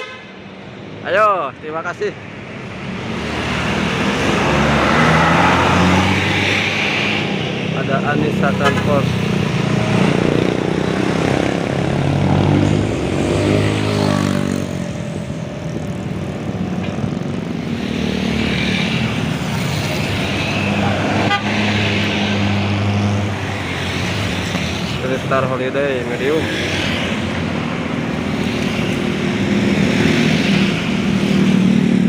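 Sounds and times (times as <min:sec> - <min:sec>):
bus horn: 0:00.0 - 0:00.4, 0:21.2 - 0:21.6
bus diesel engine passing: 0:02.5 - 0:32.0.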